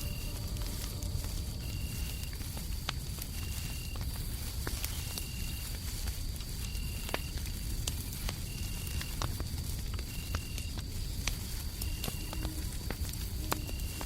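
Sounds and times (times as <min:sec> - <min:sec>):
low rumble: 0:00.0 - 0:10.1
crickets trilling: 0:00.0 - 0:14.0
fireplace crackling and popping: 0:00.0 - 0:14.0.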